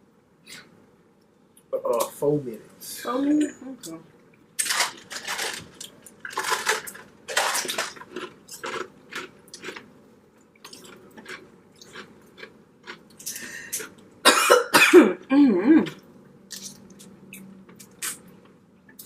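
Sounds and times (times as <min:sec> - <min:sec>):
person chewing food: 0:05.8 - 0:14.1.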